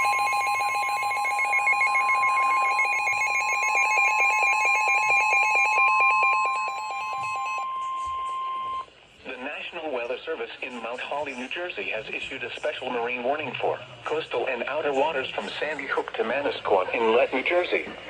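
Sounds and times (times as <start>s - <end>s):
fast trilling electronic alarm: 0.0s - 8.9s
long steady alert beep: 0.0s - 8.9s.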